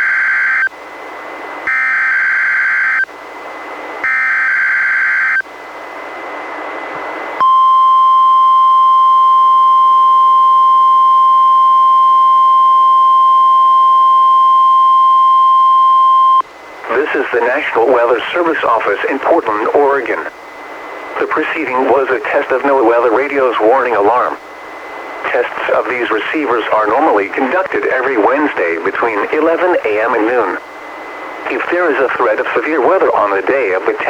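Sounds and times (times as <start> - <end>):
steady warning alarm tone: 0.0 - 6.3, 7.1 - 33.5
static hiss: 16.4 - 34.0.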